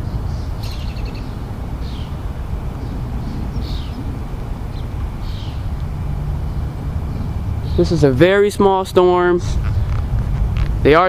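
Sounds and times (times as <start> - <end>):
bird chirping: 0.0 - 5.8, 6.4 - 8.2
low outdoor rumble: 0.0 - 11.0.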